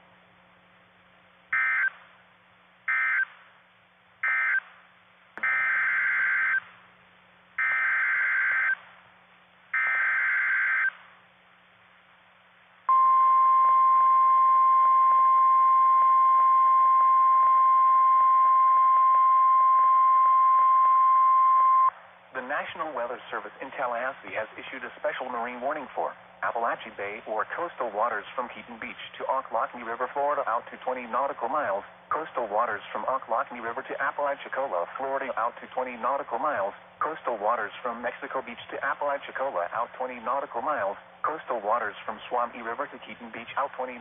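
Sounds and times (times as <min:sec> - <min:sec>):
steady warning alarm tone: 0:01.6 - 0:02.0, 0:02.9 - 0:03.4, 0:04.2 - 0:04.7, 0:05.4 - 0:06.7, 0:07.6 - 0:08.8, 0:09.8 - 0:11.0
buzzy data bursts over radio: 0:05.4 - 0:06.6, 0:09.8 - 0:11.0.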